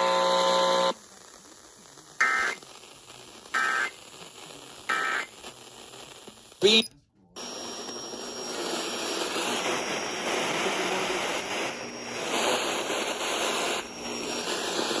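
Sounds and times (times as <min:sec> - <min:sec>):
faint high whine: 0:00.0 - 0:01.0, 0:04.9 - 0:05.4, 0:06.6 - 0:15.0
radio static hiss: 0:00.0 - 0:15.0.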